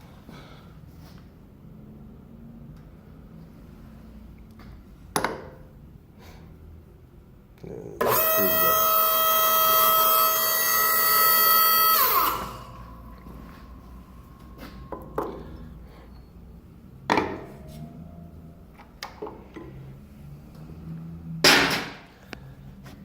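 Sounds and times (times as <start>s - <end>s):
electric hydraulic pump whining: 8.0s - 21.3s.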